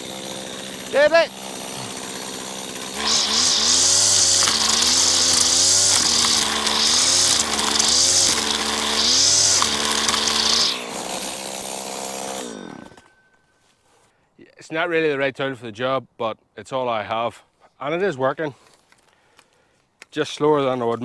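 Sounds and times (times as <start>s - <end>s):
strimmer engine cutting: 0.0s - 13.2s.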